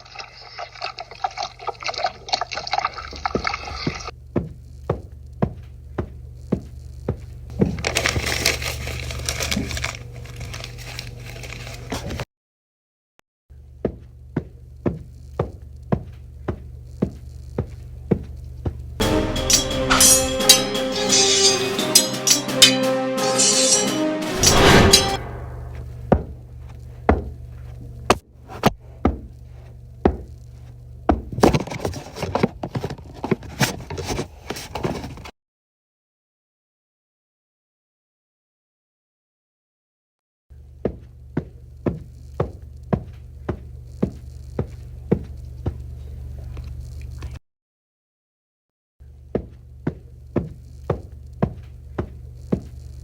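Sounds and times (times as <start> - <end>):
low hum: 19.0 - 26.6.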